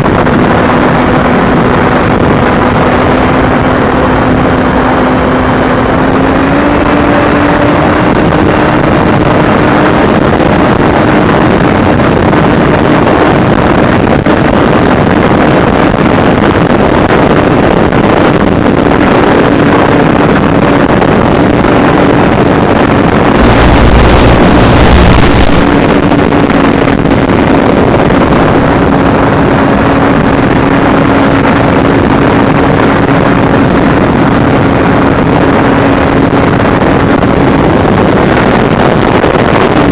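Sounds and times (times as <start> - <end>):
low buffeting rumble: 0.0 - 39.9
rushing wind noise: 0.0 - 39.9
drone motors humming: 22.1 - 29.0, 37.6 - 39.9.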